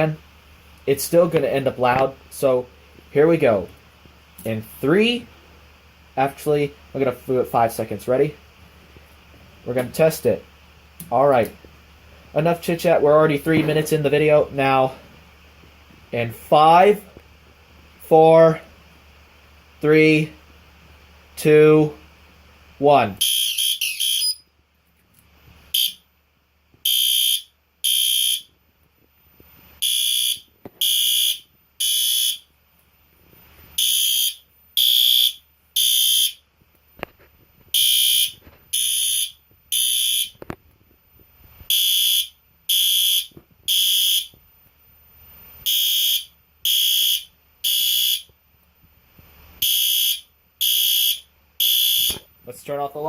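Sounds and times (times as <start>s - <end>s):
fire alarm horn blasts: 23.1s - 24.5s, 25.7s - 26.1s, 26.8s - 28.5s, 29.8s - 32.5s, 33.8s - 36.5s, 37.7s - 40.4s, 41.7s - 44.4s, 45.6s - 48.3s, 49.6s - 52.2s.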